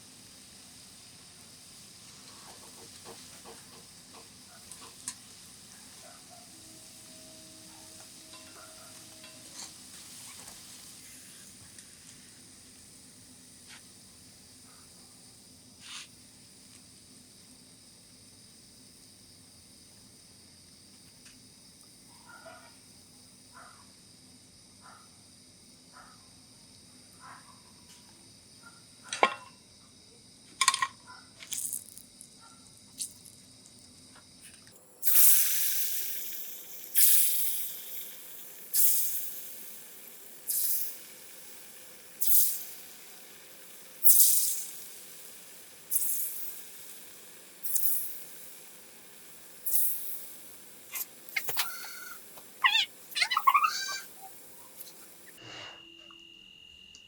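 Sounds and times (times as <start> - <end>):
batter sizzling in hot oil: 0.0 - 19.4, 31.5 - 32.2, 32.9 - 33.8, 34.8 - 55.4.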